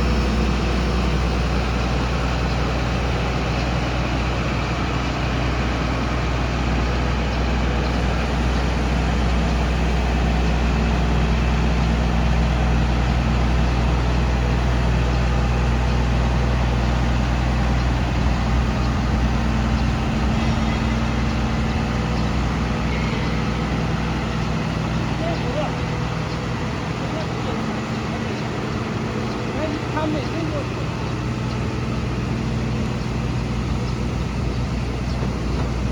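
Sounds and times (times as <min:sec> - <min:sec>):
drilling rig engine droning: 0:00.0 - 0:35.9.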